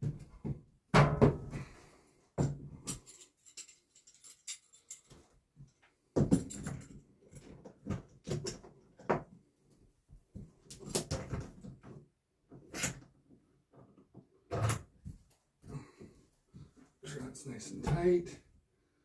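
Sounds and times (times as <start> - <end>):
wooden knocks and thumps: 0.0 - 1.7.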